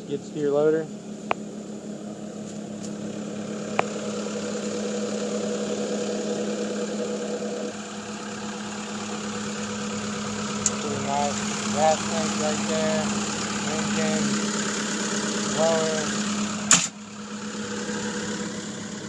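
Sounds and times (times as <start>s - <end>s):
diesel engine idling: 0.0s - 19.0s
sharp click: 16.7s - 17.0s.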